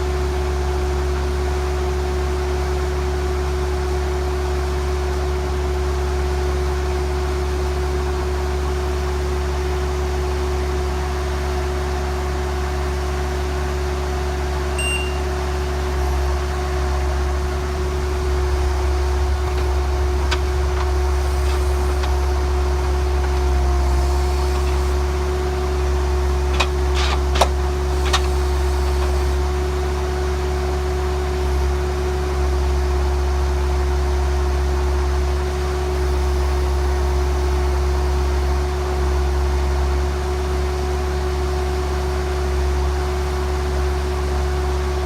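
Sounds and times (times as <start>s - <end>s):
drill rig engine drone and whine: 6.5s - 45.0s
short beep: 14.8s - 15.5s.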